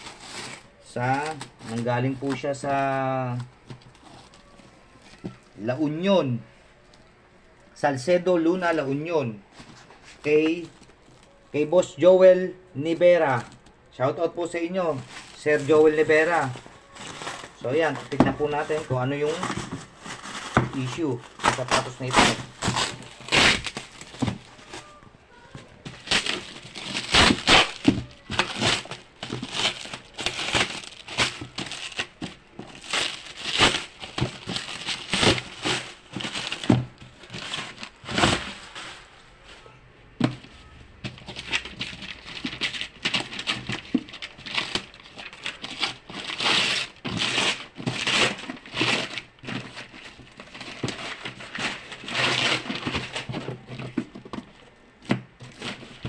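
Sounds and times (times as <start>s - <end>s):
packaging crinkling: 14.8s - 39.2s, 41.0s - 54.4s.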